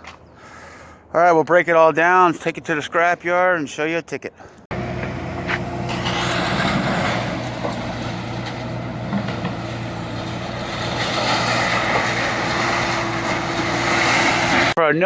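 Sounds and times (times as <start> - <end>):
road noise: 4.2 - 14.8
vehicle engine hum: 4.7 - 14.8.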